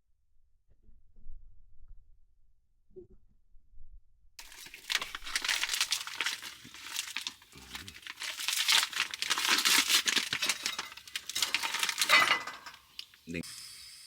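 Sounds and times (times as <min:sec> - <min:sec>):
plastic packaging crinkling and tearing: 0:04.4 - 0:13.4.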